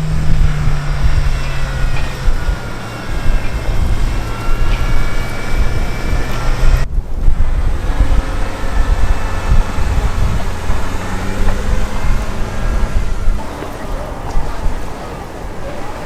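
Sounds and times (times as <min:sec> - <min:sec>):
vehicle engine humming: 0:13.4 - 0:16.0
wind buffeting microphone: 0:13.4 - 0:16.0.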